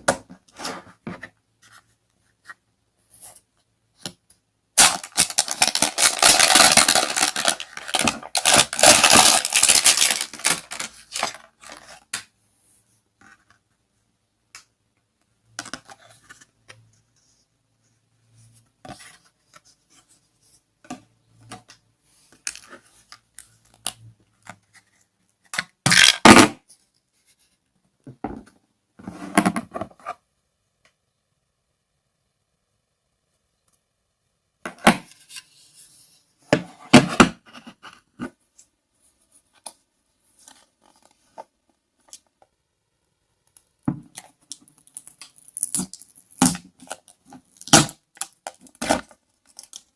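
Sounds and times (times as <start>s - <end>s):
packaging scraping and crackling: 4.8s - 11.8s.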